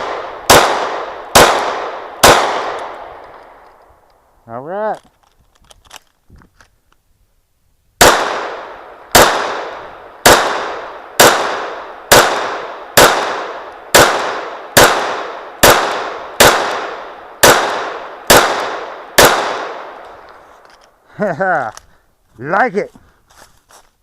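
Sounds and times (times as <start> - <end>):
handgun shots: 0.0 - 3.6, 9.2 - 19.8.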